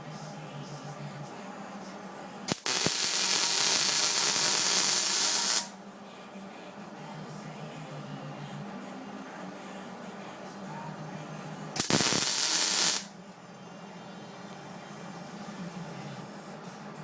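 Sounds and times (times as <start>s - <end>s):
welding arc hissing and crackling: 2.5s - 5.8s, 11.8s - 13.1s.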